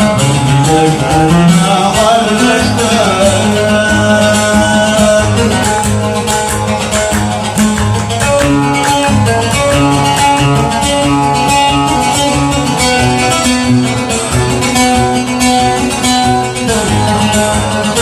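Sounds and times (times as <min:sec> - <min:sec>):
bass line: 0:00.0 - 0:18.0
percussion: 0:00.0 - 0:18.0
plucked-string melody: 0:00.0 - 0:18.0.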